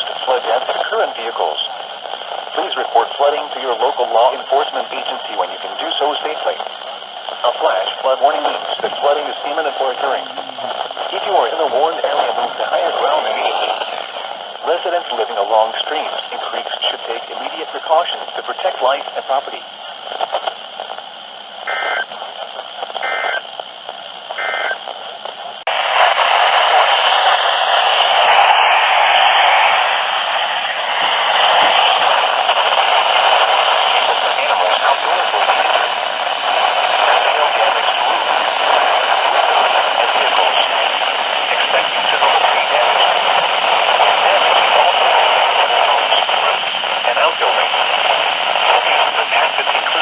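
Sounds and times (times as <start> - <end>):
background hiss: 0.0 - 50.0
loud radio static: 0.0 - 50.0
faint voice: 2.6 - 13.8, 30.8 - 36.0, 41.4 - 48.0, 48.6 - 50.0.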